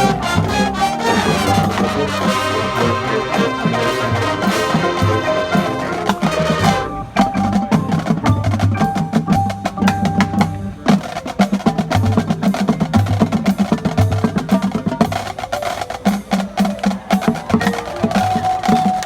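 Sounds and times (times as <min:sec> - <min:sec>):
brass chord: 0:00.0 - 0:07.2
rapid drum strokes: 0:00.0 - 0:19.0.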